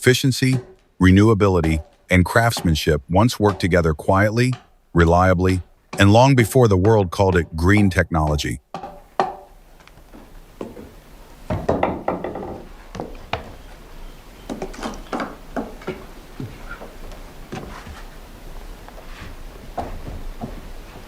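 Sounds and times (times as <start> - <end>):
wood knocking on wood: 0.4 - 13.6, 14.5 - 18.1.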